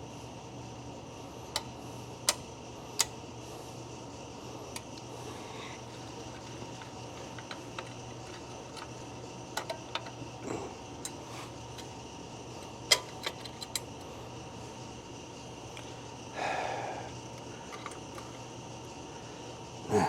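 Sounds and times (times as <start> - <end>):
steady low hum: 0.0 - 20.0
small metal clicks and clinks: 9.6 - 10.2, 12.9 - 14.0, 17.4 - 18.3.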